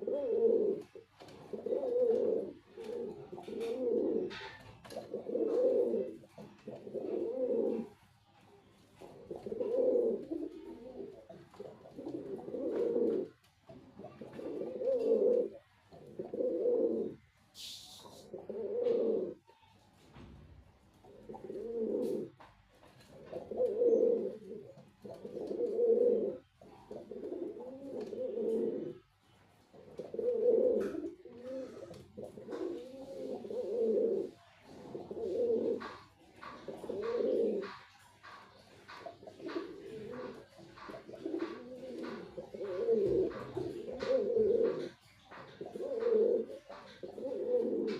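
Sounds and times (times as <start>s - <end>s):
pigeon cooing: 0.0s - 8.1s, 8.9s - 19.7s, 21.0s - 22.4s, 23.0s - 47.9s
brief hiss: 17.5s - 18.3s.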